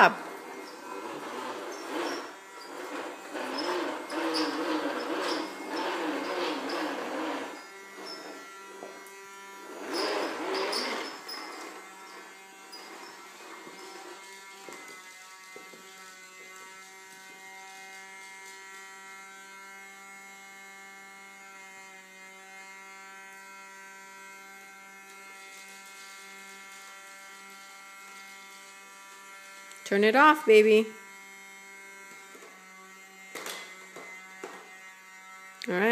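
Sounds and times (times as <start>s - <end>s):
vacuum cleaner motor humming: 0.0s - 17.6s, 26.3s - 35.9s.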